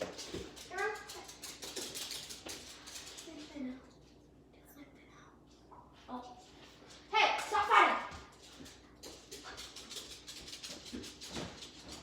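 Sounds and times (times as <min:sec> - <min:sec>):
dogs scuffling: 0:00.0 - 0:04.2, 0:06.1 - 0:12.0.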